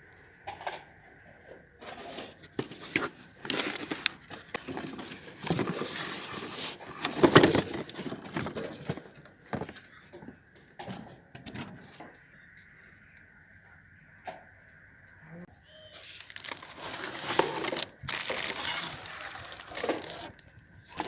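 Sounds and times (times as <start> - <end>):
packaging crinkling and rustling: 2.2 - 9.1, 16.0 - 21.0.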